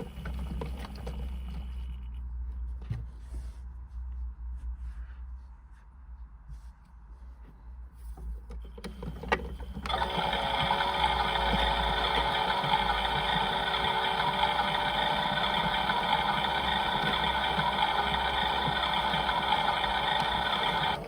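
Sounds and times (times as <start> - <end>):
toy motor whirring: 9.9 - 21.0.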